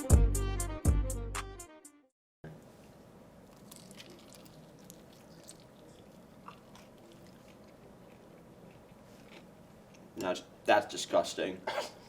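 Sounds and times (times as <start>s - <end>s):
person chewing food: 3.4s - 10.2s.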